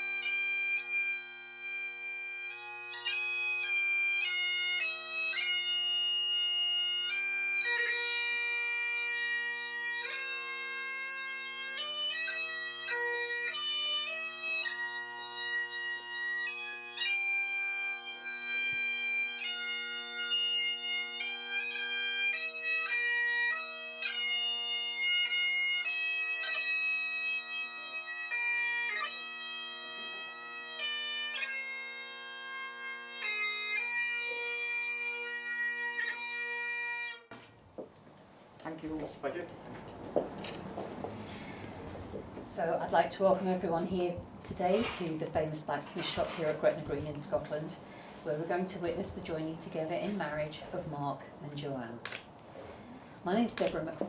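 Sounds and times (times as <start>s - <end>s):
bagpipes playing slow tune: 0.0s - 54.0s.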